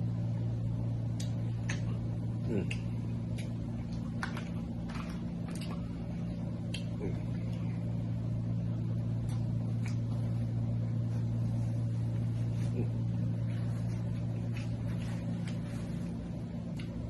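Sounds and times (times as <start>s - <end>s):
steady low hum: 0.0s - 17.0s
eating clicks and smacks: 1.1s - 5.9s, 6.6s - 7.7s, 9.2s - 10.1s, 16.7s - 17.0s.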